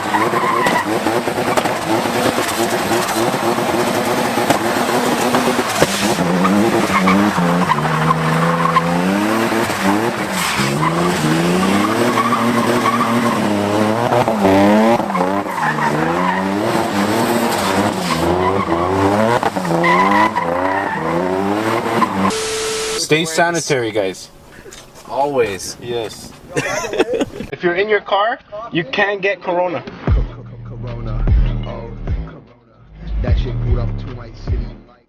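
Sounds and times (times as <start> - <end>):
car engine revving: 0.0 - 22.8
tyres squealing: 0.0 - 27.5.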